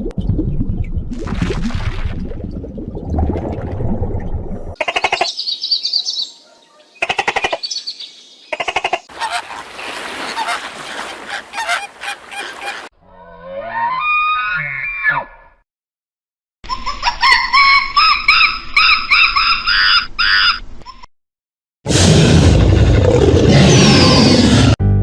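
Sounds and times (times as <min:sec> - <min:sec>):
birds calling: 0:04.8 - 0:12.9.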